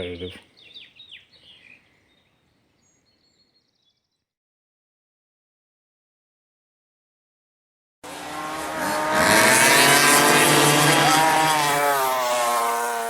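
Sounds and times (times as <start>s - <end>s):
go-kart engine revving high: 8.0s - 13.0s.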